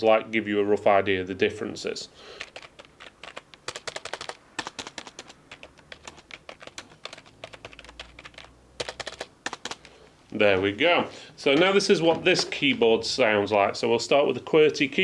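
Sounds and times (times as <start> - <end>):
typing on keyboard: 2.4 - 9.9.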